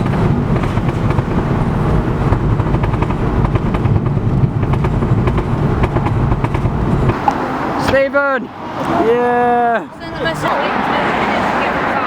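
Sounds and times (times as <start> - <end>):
car engine running: 0.0 - 8.0.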